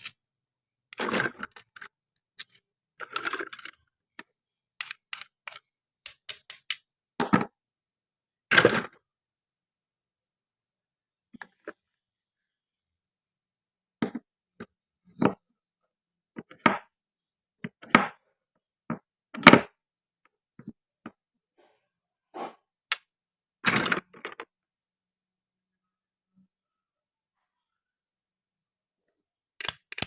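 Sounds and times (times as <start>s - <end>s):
toy pieces clicking and knocking: 1.0s - 3.9s, 4.8s - 6.9s, 29.6s - 30.0s.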